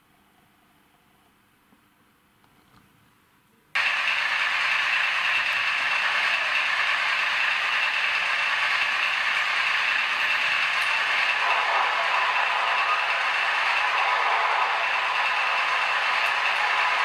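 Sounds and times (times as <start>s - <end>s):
model train motor whirring: 3.8s - 17.0s
wheels on rails: 3.8s - 17.0s.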